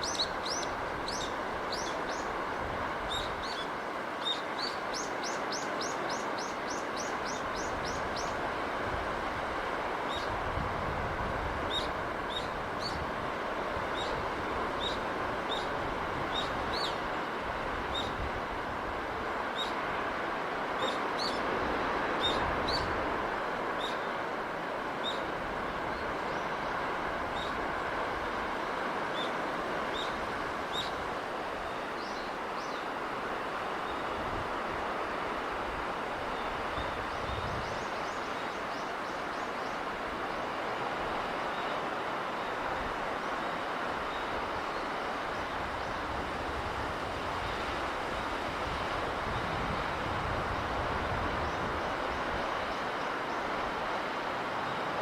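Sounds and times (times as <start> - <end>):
sea wind: 0.0 - 55.0.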